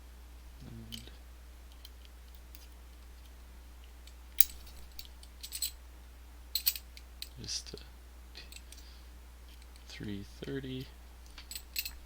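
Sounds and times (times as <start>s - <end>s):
small metal parts clicking: 0.6s - 5.8s, 6.5s - 7.4s, 8.4s - 8.9s, 9.5s - 12.0s.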